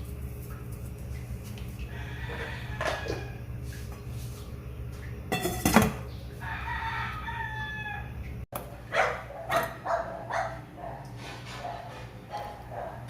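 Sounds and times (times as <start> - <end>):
rooster crowing: 1.8 - 3.4, 6.4 - 8.2.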